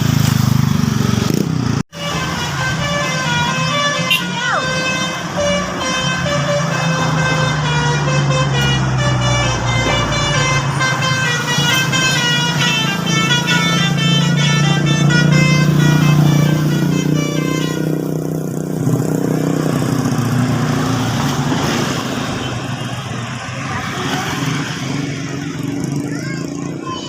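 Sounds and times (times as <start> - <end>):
bus engine running: 0.0 - 27.0
road noise: 0.0 - 27.0
bus horn playing high notes: 1.9 - 19.9.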